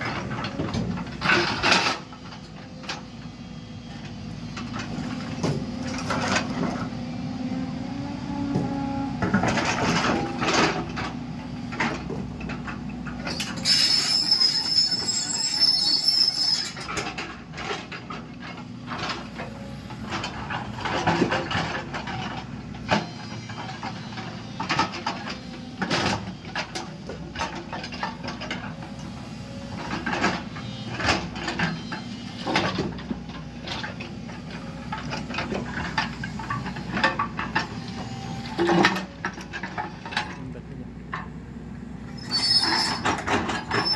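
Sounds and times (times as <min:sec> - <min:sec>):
excavator diesel engine running: 0:00.0 - 0:43.9
high metallic squeal: 0:13.3 - 0:16.9, 0:42.1 - 0:43.9.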